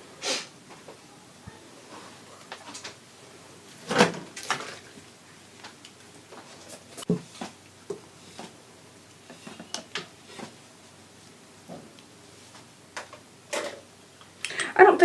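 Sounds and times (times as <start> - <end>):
containers and utensils clattering: 3.8 - 5.0, 13.0 - 13.9.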